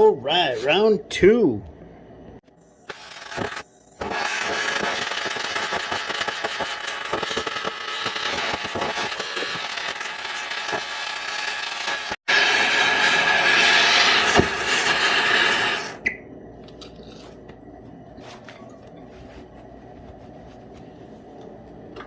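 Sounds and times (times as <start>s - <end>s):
gas flame hissing: 2.4s - 16.0s
crackles: 2.5s - 16.0s.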